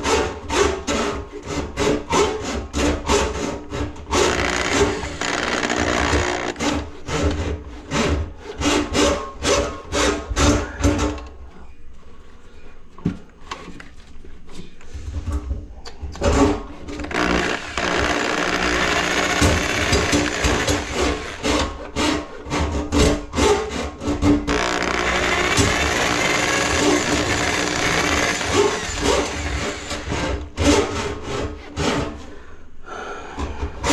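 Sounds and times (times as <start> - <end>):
tool rasping strokes: 0.0 - 10.3.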